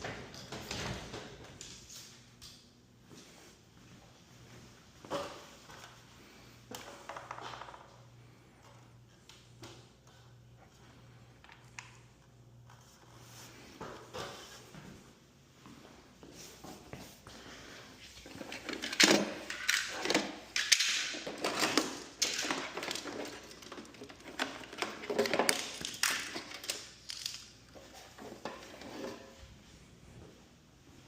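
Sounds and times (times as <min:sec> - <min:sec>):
metal parts and tools clanking: 0:18.3 - 0:29.4.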